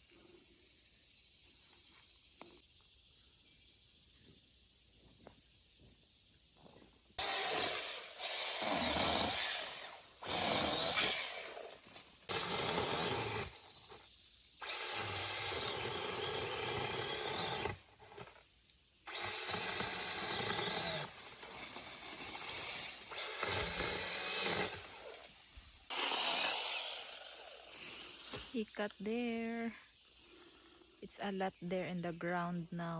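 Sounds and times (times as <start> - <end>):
chainsaw cutting branch: 7.2 - 14.0, 14.6 - 18.4, 19.1 - 28.8.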